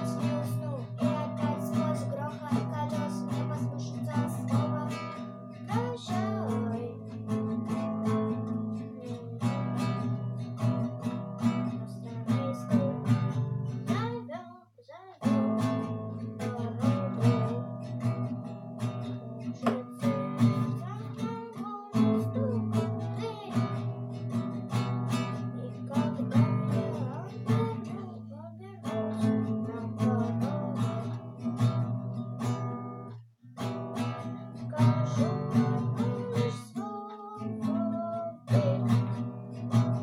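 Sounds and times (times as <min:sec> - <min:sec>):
acoustic guitar strumming: 0:00.0 - 0:14.5, 0:15.1 - 0:40.0
person singing: 0:00.0 - 0:33.2, 0:34.0 - 0:40.0.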